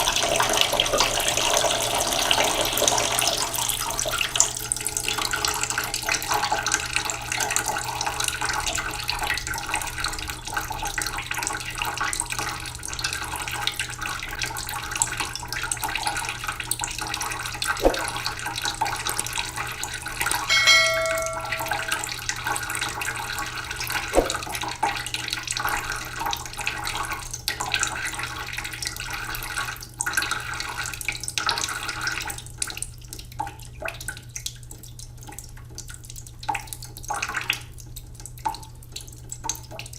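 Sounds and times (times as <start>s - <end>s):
short pitched tone: 20.5s - 22.1s.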